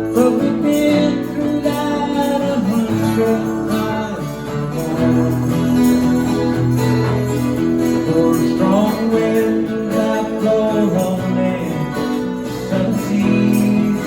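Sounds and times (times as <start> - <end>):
strummed acoustic guitar: 0.0 - 14.0
folk band playing: 4.4 - 10.7.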